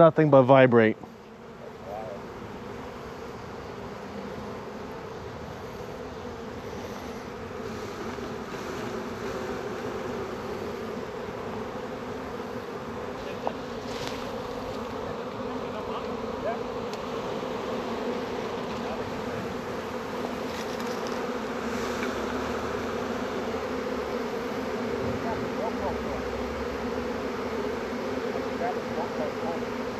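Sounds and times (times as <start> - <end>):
bee swarm buzzing: 0.0 - 29.9.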